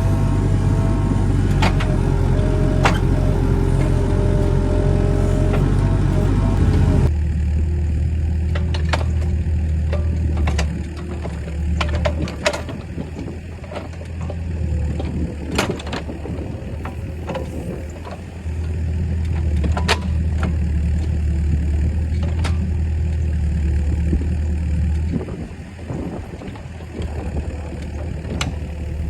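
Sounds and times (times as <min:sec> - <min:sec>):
knocks and clanks: 0:00.0 - 0:07.1, 0:08.5 - 0:21.2
engine humming: 0:00.0 - 0:29.0.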